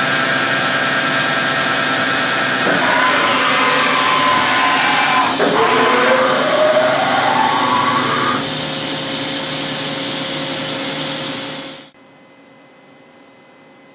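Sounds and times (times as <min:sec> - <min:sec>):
lathe machine whine: 0:01.2 - 0:11.9.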